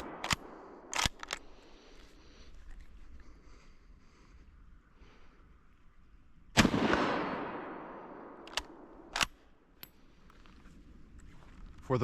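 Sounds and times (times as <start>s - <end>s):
rifle shot: 0.0s - 1.2s, 6.6s - 9.4s
rifle bolt clicks: 0.0s - 1.6s, 8.4s - 10.0s.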